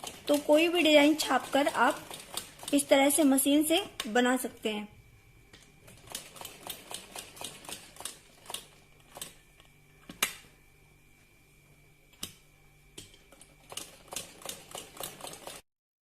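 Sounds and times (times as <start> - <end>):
sewing machine stitching: 13.6 - 15.6.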